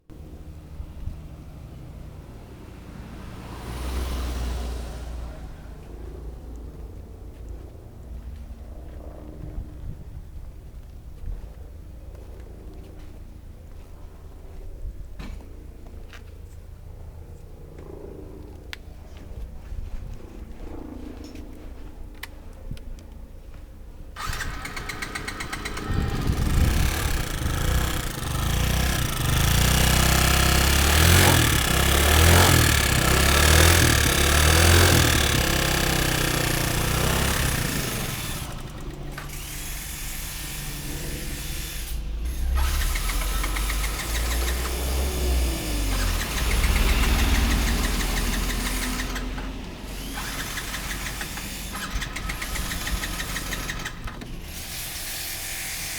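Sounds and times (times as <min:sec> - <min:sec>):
abnormal engine noise: 0:24.2 - 0:55.9
scooter engine revving: 0:24.2 - 0:55.9.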